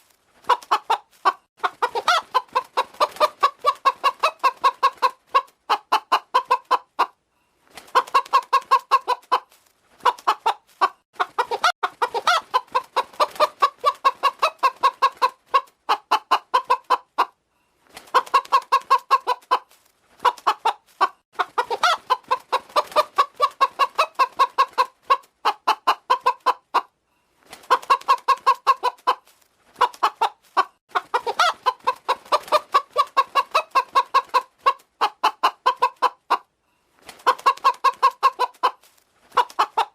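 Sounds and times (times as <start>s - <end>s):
hen clucking: 0.4s - 7.2s, 7.8s - 17.4s, 18.1s - 27.0s, 27.6s - 36.5s, 37.2s - 39.9s.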